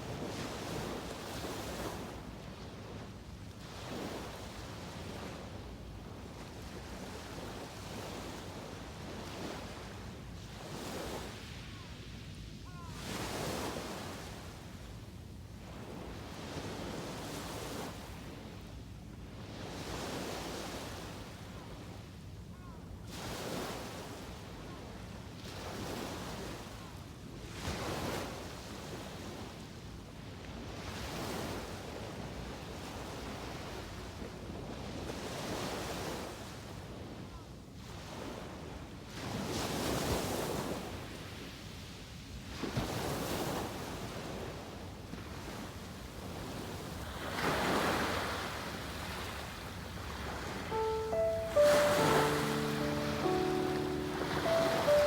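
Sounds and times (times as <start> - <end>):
ocean waves breaking on shore: 47.0 - 55.0.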